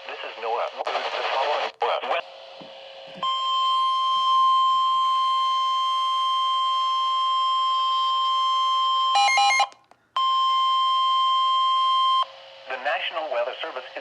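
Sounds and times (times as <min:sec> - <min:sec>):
steady high alarm tone: 0:03.2 - 0:12.3.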